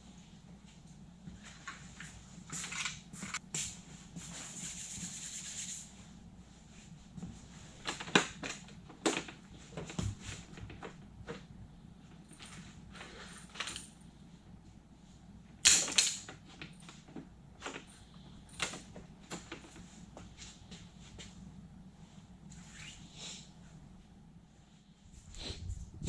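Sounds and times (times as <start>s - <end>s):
low steady hum: 0.0s - 26.0s
rubbing or scraping noise: 4.2s - 5.9s.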